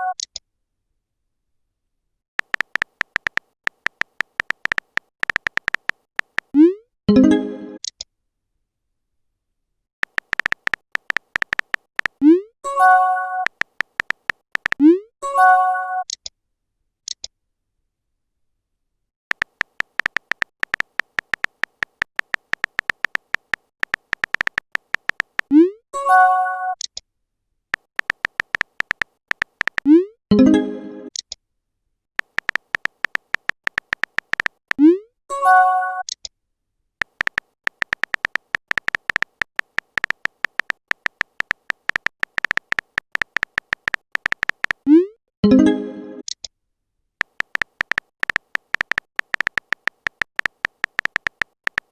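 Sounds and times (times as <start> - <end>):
keyboard tap clicks: 2.4 - 6.5, 10.0 - 12.2, 13.5 - 14.8, 19.3 - 25.5, 27.8 - 29.9, 32.2 - 34.8, 37.0 - 44.8, 47.2 - 51.9
small pops: 2.4 - 6.8, 10.0 - 12.4, 13.5 - 14.9, 19.3 - 25.6, 27.8 - 30.0, 32.2 - 34.9, 37.0 - 44.9, 47.2 - 51.9
message chime: 30.3 - 31.1, 45.4 - 46.2.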